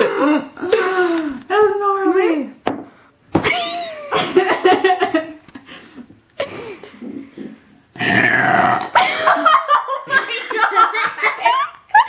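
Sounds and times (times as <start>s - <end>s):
girl burping loudly: 8.0s - 9.1s.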